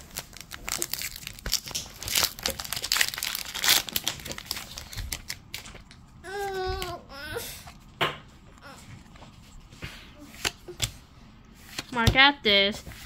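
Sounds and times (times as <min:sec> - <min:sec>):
foil wrapper crinkling: 0:00.0 - 0:06.0.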